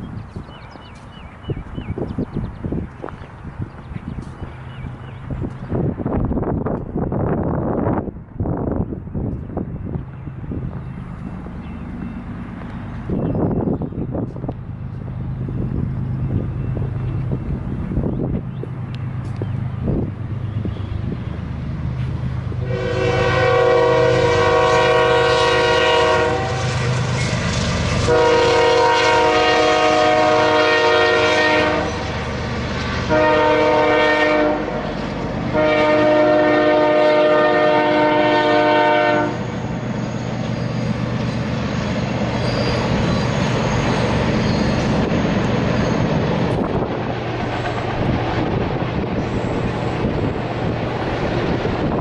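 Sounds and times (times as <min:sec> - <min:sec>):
passing train rumble: 0:00.0 - 0:52.0
locomotive air horn blasts: 0:22.6 - 0:26.8, 0:28.0 - 0:32.2, 0:33.1 - 0:34.9, 0:35.5 - 0:39.5.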